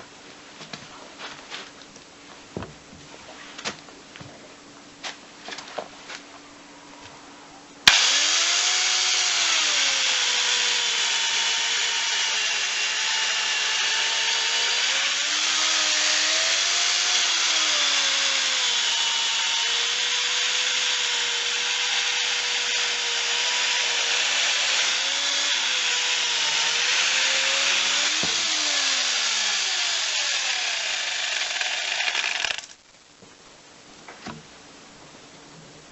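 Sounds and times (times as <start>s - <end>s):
angle grinder chainsaw cutting wood: 7.9s - 32.8s.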